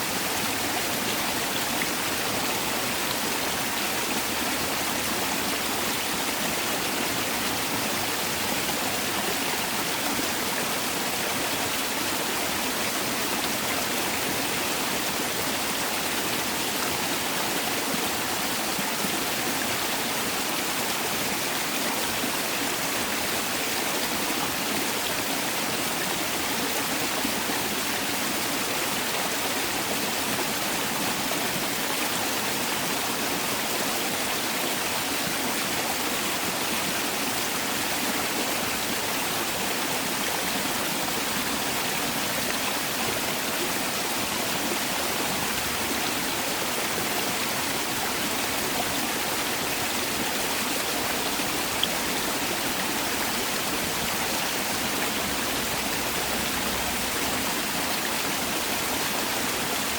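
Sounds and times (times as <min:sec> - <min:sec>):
stream water running over rocks: 0:00.0 - 0:59.9.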